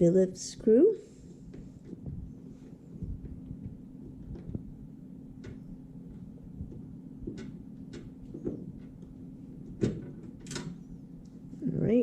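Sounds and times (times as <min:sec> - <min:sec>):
steady low hum: 0:00.0 - 0:12.0
screwdriver clicks and knocks: 0:05.4 - 0:10.7.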